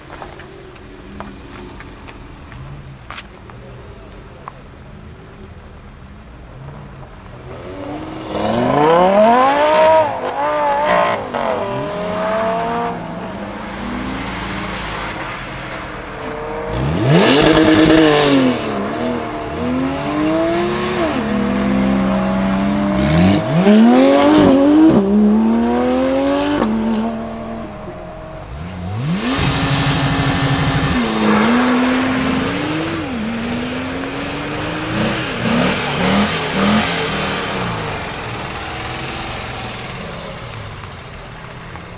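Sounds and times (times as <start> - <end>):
supercar engines revving and accelerating: 0.0 - 41.9.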